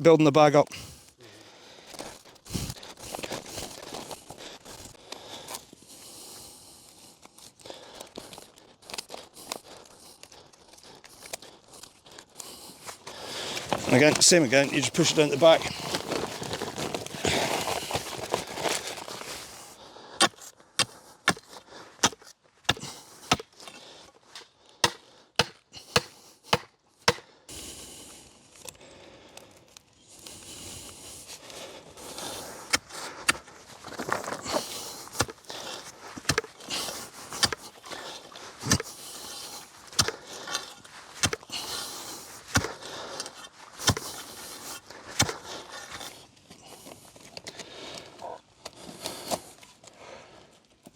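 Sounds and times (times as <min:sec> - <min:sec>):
rustling: 0:12.8 - 0:19.8, 0:31.2 - 0:46.0.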